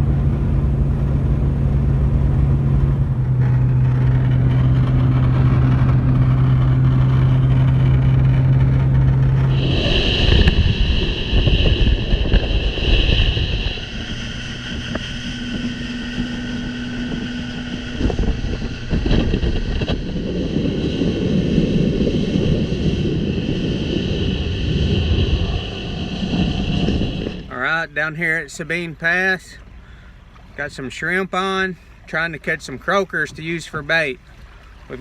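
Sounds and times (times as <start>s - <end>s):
vehicle engine rumble: 0.0s - 35.0s
wind noise: 2.2s - 28.0s
high-pitched whine: 2.6s - 28.8s.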